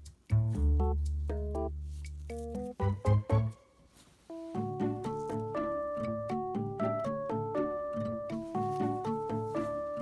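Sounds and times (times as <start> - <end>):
keyboard chords: 4.3 - 10.0.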